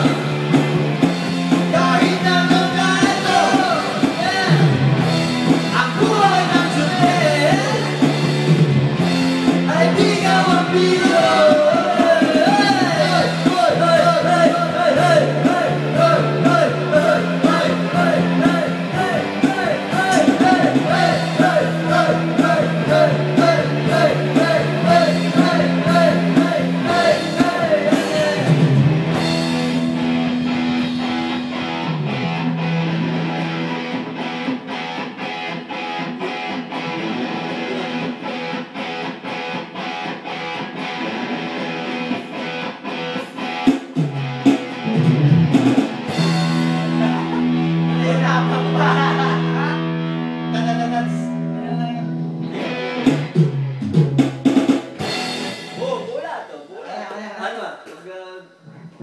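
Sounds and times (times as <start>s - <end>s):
rock song: 0.0s - 56.4s
guitar: 0.0s - 59.0s
person singing: 1.6s - 4.8s, 5.7s - 8.1s, 9.6s - 28.9s, 46.0s - 53.1s.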